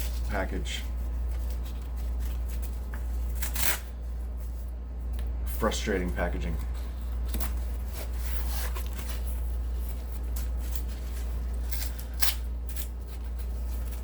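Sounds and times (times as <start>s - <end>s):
cardboard tearing: 1.4s - 4.0s, 7.0s - 14.0s.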